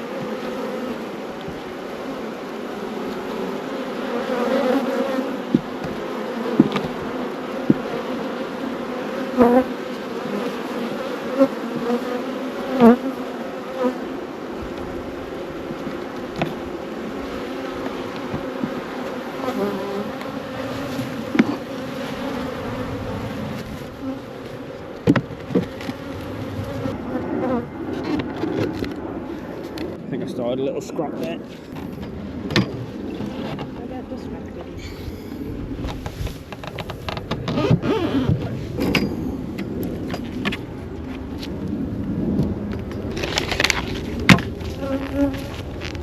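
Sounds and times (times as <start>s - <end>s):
bees buzzing: 0.0s - 29.9s, 43.0s - 46.0s.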